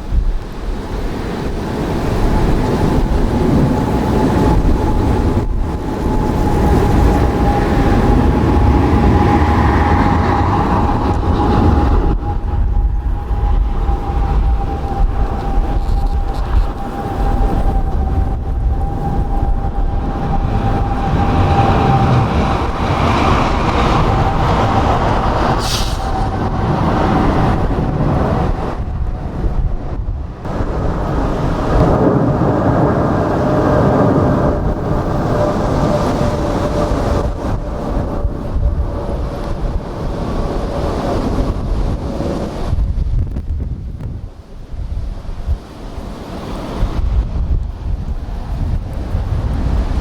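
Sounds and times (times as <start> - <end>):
jet engine whine: 0.0 - 50.0
jet engines rumbling: 0.0 - 50.0
wind noise on microphone: 0.0 - 50.0
high hiss: 25.5 - 26.3.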